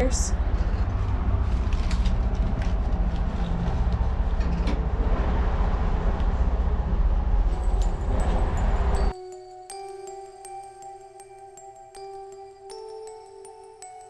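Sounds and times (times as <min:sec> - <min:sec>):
vehicle engine rumbling: 0:00.0 - 0:09.1.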